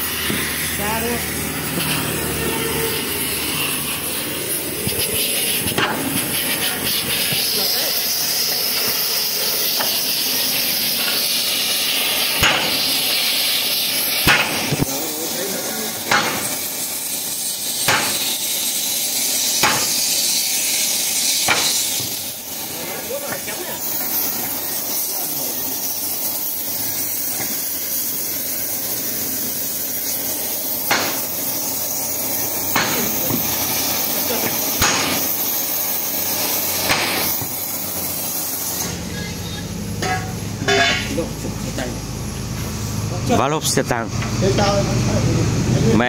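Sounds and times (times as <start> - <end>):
gas torch hissing: 0.0 - 46.0
hammer blows on metal: 17.8 - 18.3, 19.6 - 20.1, 21.4 - 22.1.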